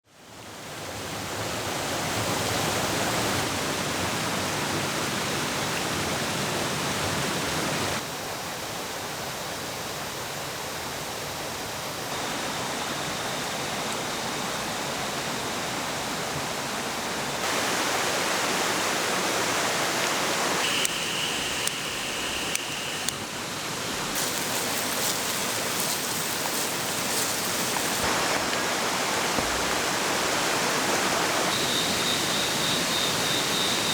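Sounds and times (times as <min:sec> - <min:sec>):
river water rushing: 0:11.6 - 0:33.9
faint high steady tone: 0:20.6 - 0:23.1, 0:30.9 - 0:33.9
sharp clicks: 0:20.6 - 0:23.2.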